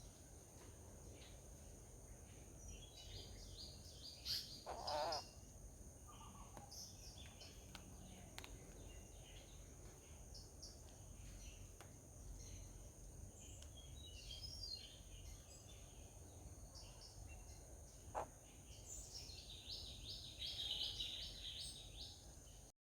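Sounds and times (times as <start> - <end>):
high insect drone: 0.0 - 8.2
small birds chirping: 0.0 - 22.7.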